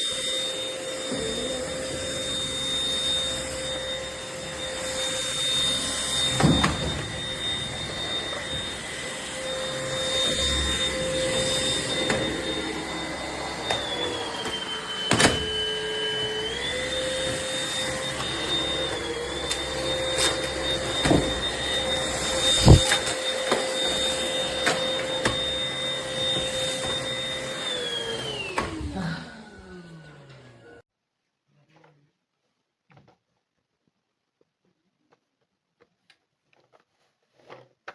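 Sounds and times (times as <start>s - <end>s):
stick vacuum whine: 0.0s - 30.8s.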